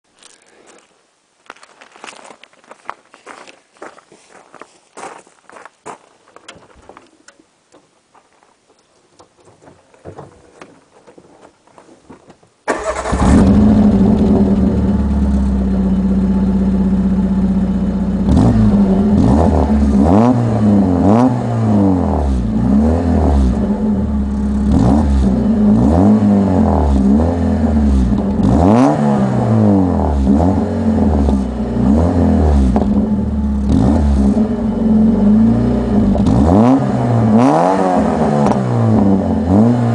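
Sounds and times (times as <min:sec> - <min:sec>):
faint scuffs: 0:00.2 - 0:12.5
car engine starting and revving: 0:12.7 - 0:39.9.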